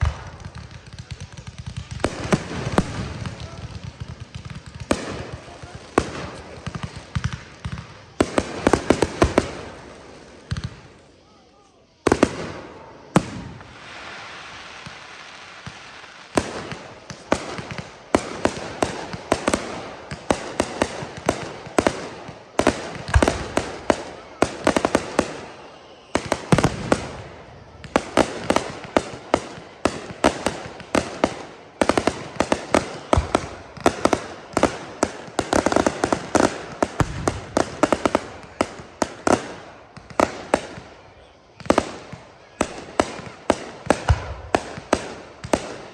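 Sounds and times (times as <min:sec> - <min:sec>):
hissing of burning shells: 0:00.0 - 0:41.1
fireworks bangs: 0:00.0 - 0:45.9
fireworks crackling and popping: 0:00.0 - 0:45.9.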